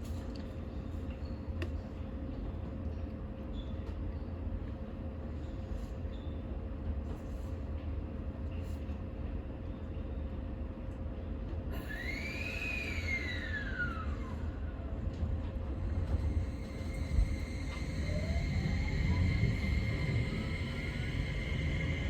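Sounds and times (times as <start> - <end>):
train running low rumble: 0.0 - 22.0
high electric motor whine: 16.0 - 22.0.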